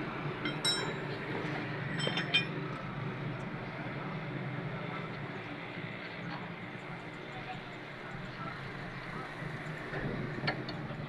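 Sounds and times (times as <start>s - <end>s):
steady background noise: 0.0s - 11.0s
short metallic clinks: 0.4s - 1.0s, 2.0s - 2.5s.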